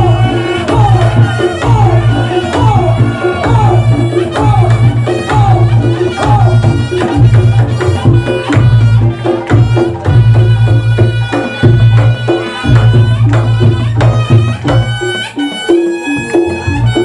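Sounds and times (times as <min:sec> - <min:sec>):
swooping melodic line: 0:00.0 - 0:10.5
gamelan ensemble playing: 0:00.0 - 0:17.0
hand drums rhythm: 0:00.0 - 0:17.0.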